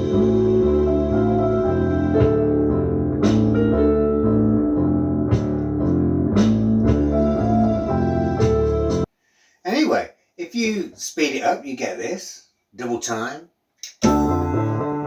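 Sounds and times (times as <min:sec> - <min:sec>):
looped keyboard music: 0:00.0 - 0:09.1, 0:14.0 - 0:15.0
sharp percussive hit: 0:14.0 - 0:14.8.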